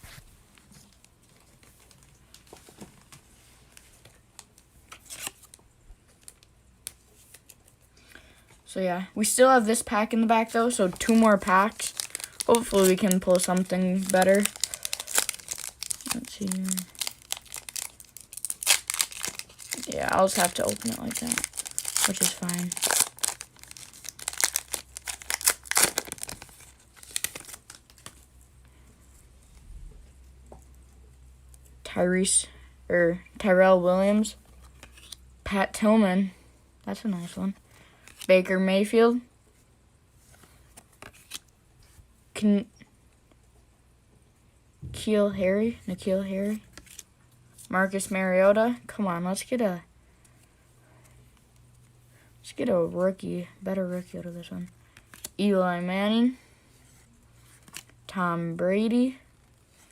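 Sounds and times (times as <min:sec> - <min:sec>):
plastic crinkle: 0:10.7 - 0:28.2.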